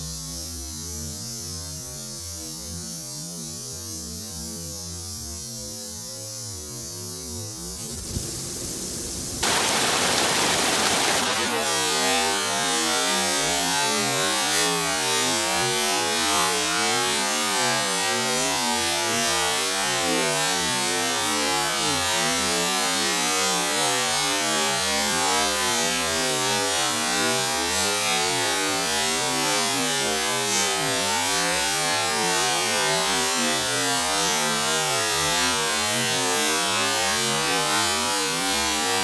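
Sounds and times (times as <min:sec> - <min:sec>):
constant hiss: 0:07.8 - 0:11.8.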